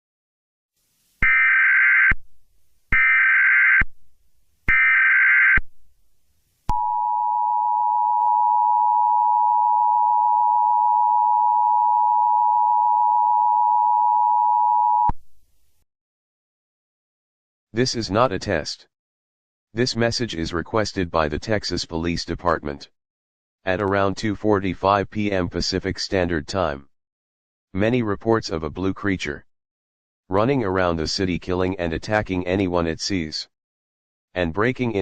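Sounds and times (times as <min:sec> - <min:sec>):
two-tone alarm: 0:01.2 - 0:02.2, 0:02.9 - 0:03.9, 0:04.7 - 0:05.6, 0:06.7 - 0:15.1.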